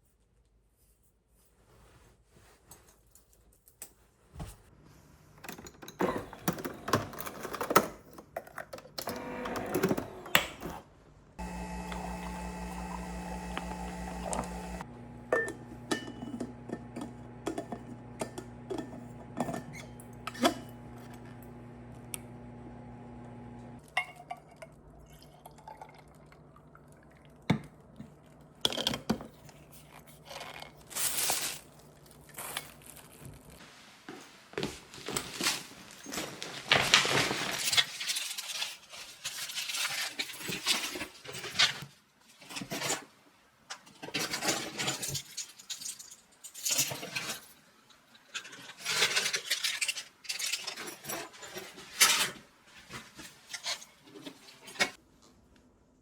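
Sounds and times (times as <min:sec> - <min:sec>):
electric hum: 0:11.4 - 0:23.8
dishes and utensils clinking: 0:15.3 - 0:21.2.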